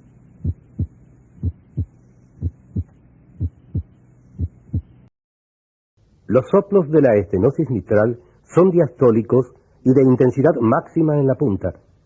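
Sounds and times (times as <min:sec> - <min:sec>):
faint steady hum: 0:00.0 - 0:05.1, 0:06.0 - 0:12.0
heartbeat lub-dub: 0:00.4 - 0:04.9.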